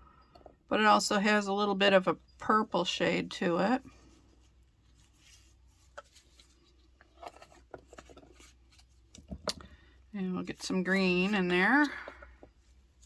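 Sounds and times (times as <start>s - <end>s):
faint light taps and scrapes: 4.4s - 9.6s.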